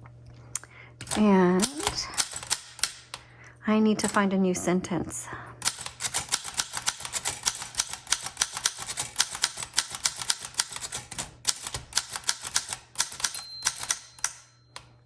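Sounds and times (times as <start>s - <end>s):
typewriter typing: 1.0s - 3.0s, 5.6s - 14.5s.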